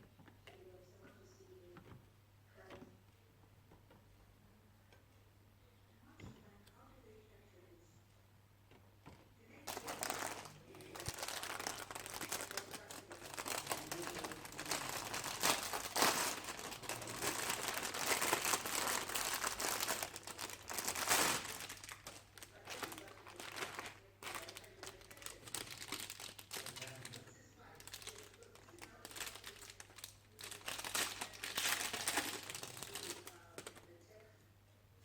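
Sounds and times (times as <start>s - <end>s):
plastic packaging crinkling: 9.6s - 33.9s.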